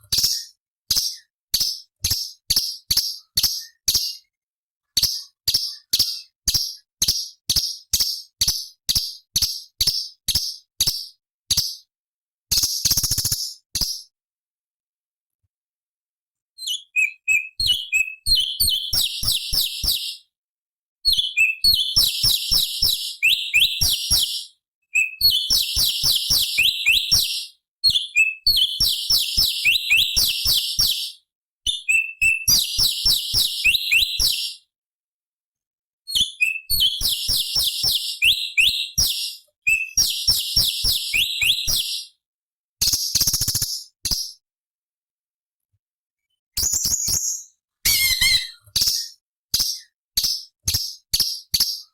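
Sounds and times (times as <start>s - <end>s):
bird chattering song: 0.0s - 4.3s, 4.9s - 11.8s, 16.7s - 20.2s, 21.1s - 34.6s, 36.3s - 42.1s, 46.6s - 51.9s.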